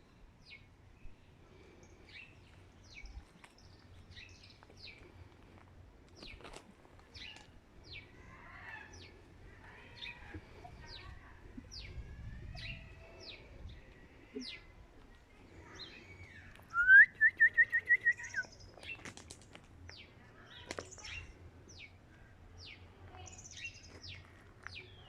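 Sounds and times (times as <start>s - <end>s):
small birds chirping: 0.0s - 25.0s
soft bird twittering: 15.6s - 19.0s.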